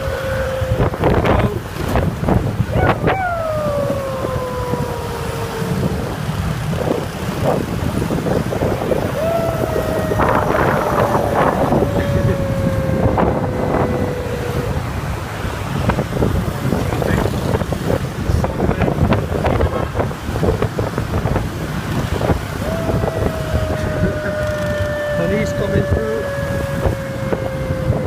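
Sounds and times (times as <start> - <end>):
man imitating a siren: 0.0 - 1.6, 2.6 - 7.6, 8.4 - 15.5, 22.5 - 28.0
wind noise on microphone: 0.0 - 28.0.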